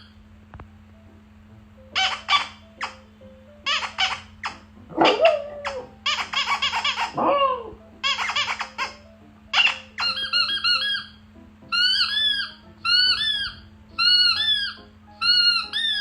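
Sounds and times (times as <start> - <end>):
baby laughing: 1.9 - 3.0, 3.6 - 11.1, 11.7 - 16.0.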